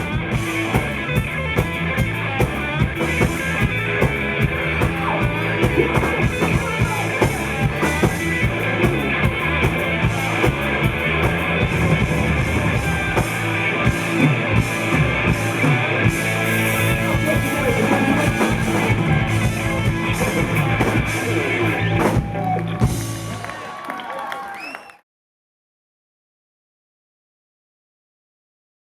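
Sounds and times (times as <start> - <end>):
drum kit: 0.0 - 23.6
electric guitar: 0.0 - 23.8.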